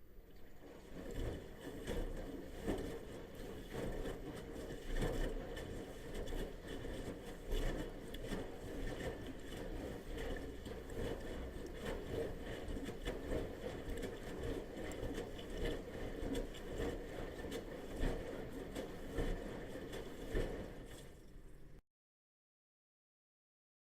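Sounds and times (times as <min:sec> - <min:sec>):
laundry and water sloshing: 0:00.2 - 0:21.8.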